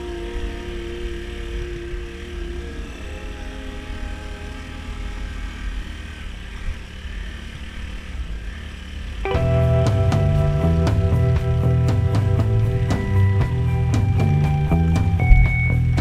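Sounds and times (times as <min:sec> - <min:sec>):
vehicle engine rumbling: 0:00.0 - 0:16.0.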